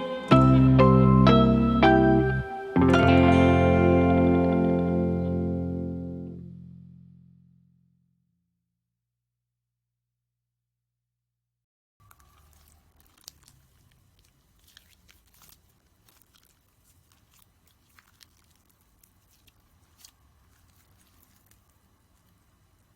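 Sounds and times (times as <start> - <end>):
low hum: 0.0 - 8.0.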